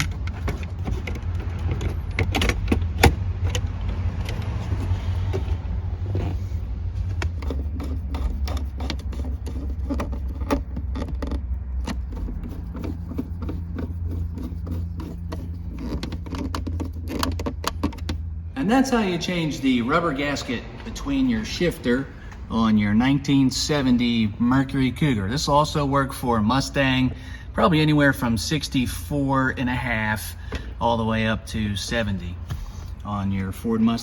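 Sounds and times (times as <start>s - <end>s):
clicks and knocks of plastic parts: 0.0s - 5.6s, 7.1s - 18.3s
steady low hum: 0.0s - 34.0s.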